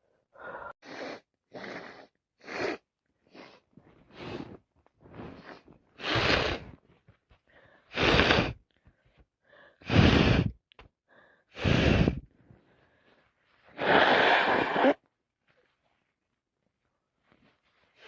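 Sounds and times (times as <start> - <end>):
gasping in-breath: 0.0 - 1.2, 7.5 - 15.0.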